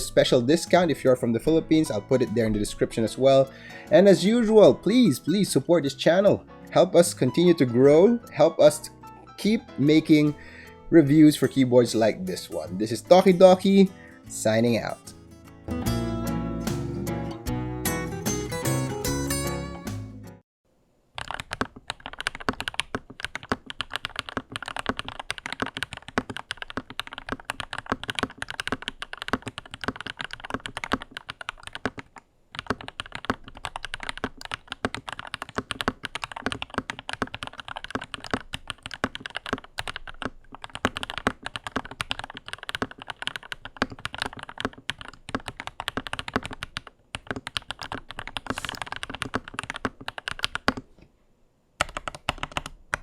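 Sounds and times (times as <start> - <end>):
mechanical keyboard typing: 21.2 - 50.9, 51.8 - 53.0.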